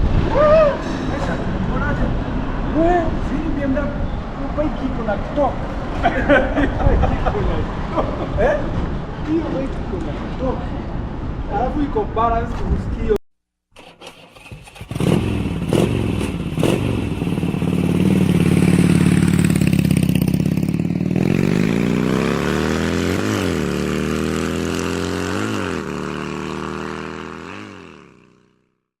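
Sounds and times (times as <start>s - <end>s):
motorcycle throttle blips: 14.4s - 28.4s
motorcycle engine idling: 14.5s - 21.6s.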